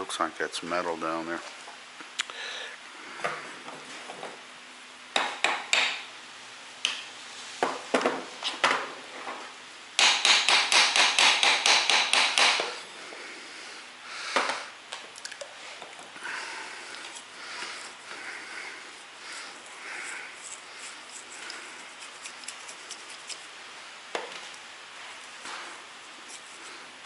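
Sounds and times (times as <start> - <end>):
tool tapping on metal: 5.2 - 6.0, 10.0 - 12.8.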